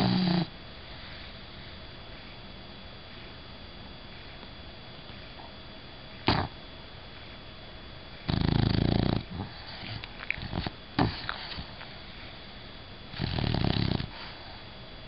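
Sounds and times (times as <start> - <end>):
dog snoring: 0.0 - 0.5, 6.2 - 6.6, 8.2 - 11.7, 13.1 - 14.7
dog snuffles: 0.0 - 1.3, 6.2 - 6.6, 8.2 - 11.9, 13.1 - 14.6.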